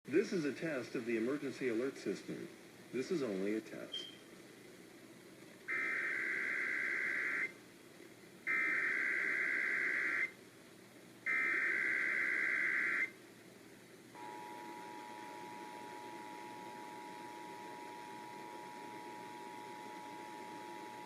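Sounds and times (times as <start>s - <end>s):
digital data tone bursts: 5.7s - 7.5s, 8.5s - 10.3s, 11.3s - 13.1s.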